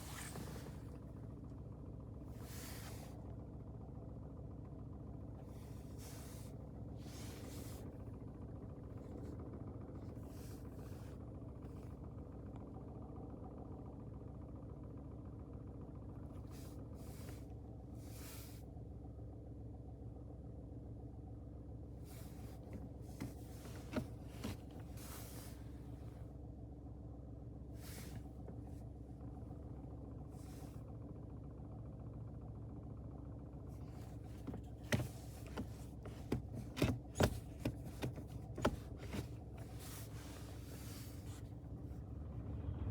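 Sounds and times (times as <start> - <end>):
car engine idling: 0.0 - 13.6, 22.1 - 26.6, 27.2 - 42.9.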